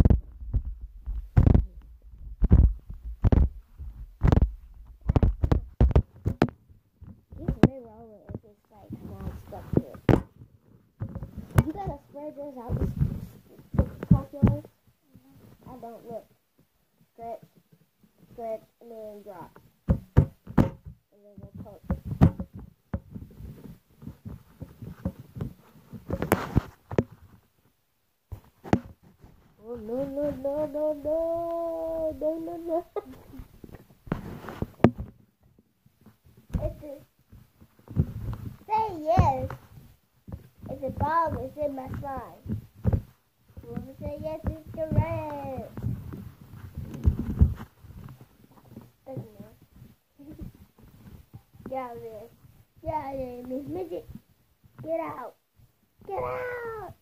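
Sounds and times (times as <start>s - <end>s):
low rumble: 0.0s - 5.1s.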